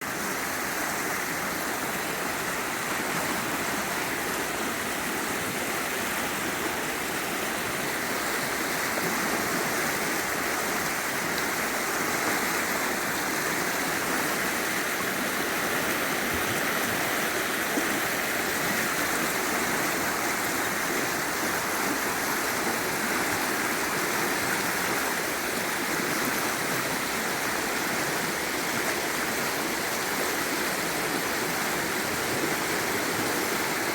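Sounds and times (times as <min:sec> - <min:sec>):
river water flowing over rocks: 0:00.0 - 0:33.9.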